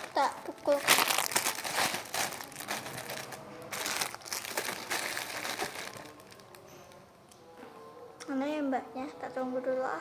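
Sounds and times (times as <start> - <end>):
packaging crinkling: 0.0 - 6.6.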